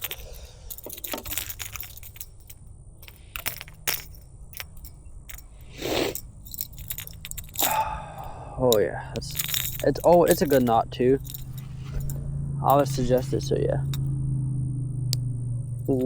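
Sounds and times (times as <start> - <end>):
fishing lure clicks and jangles: 0.0 - 8.4, 9.2 - 14.0.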